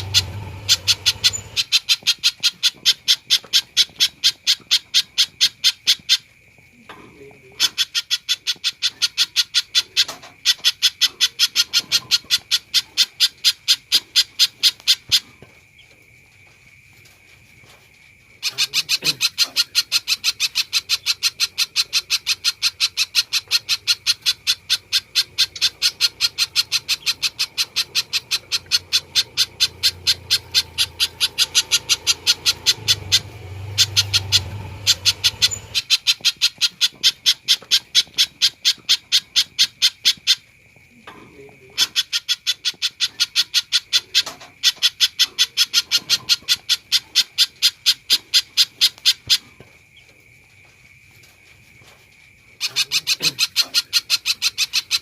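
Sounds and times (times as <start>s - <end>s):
bird calling sharp high notes: 25.0s - 36.0s.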